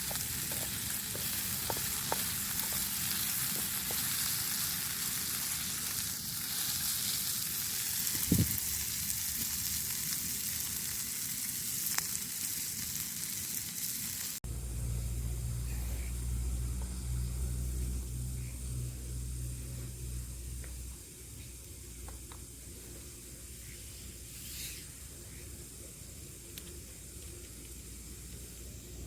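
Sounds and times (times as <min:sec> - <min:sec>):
food sizzling in a pan: 0:00.0 - 0:14.4
low machine drone: 0:14.4 - 0:23.7.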